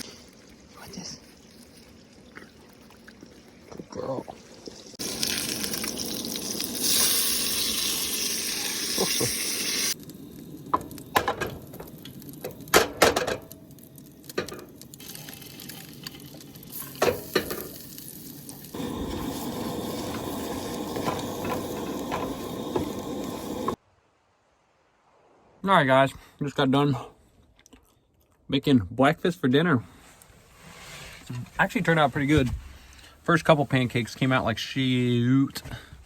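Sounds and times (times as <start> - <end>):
food sizzling in frying pan: 4.4 - 23.8.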